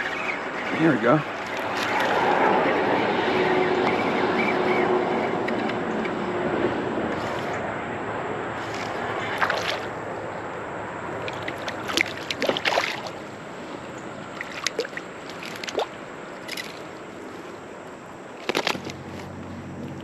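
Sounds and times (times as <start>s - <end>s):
creek water sloshing: 0.0s - 5.3s, 8.4s - 20.0s
short sharp splashes: 9.4s - 9.9s, 11.2s - 13.2s, 14.4s - 16.8s.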